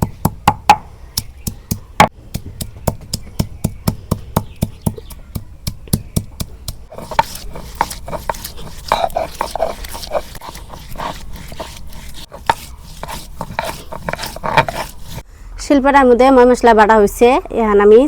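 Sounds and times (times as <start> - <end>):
stone knocking on grinding slab: 1.4 - 15.2.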